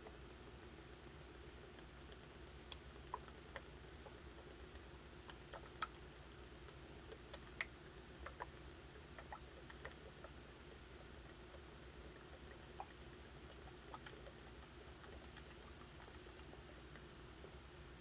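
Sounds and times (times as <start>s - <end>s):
faint irregular clicks: 0.0s - 17.8s.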